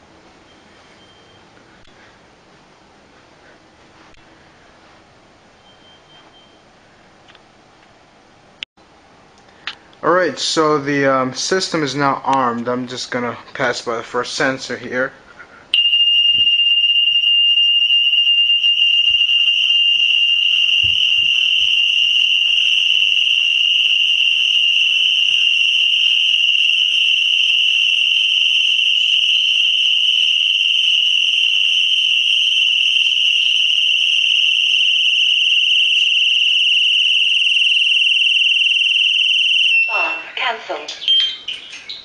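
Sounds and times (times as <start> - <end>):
alarm siren high-pitched tone: 15.8 - 41.7.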